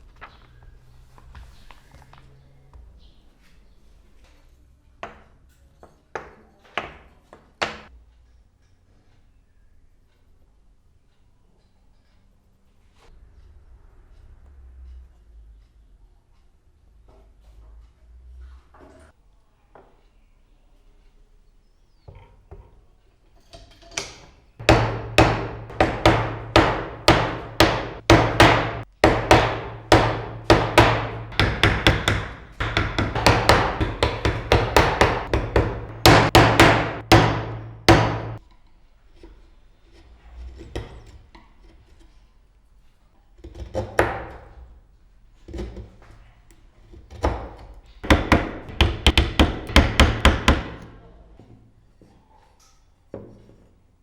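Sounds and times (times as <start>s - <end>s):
mallet striking chisel into wood: 24.0s - 38.4s, 47.1s - 51.5s.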